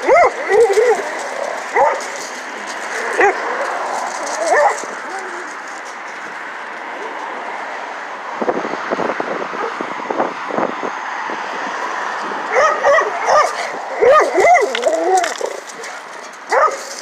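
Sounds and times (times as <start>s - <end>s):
dog whining and yipping: 0.0s - 2.0s, 3.0s - 5.6s, 12.5s - 16.8s.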